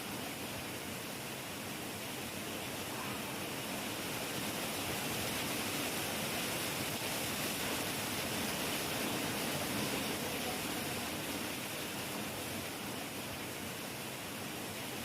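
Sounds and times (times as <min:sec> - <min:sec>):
heavy rain hissing: 0:00.0 - 0:15.0.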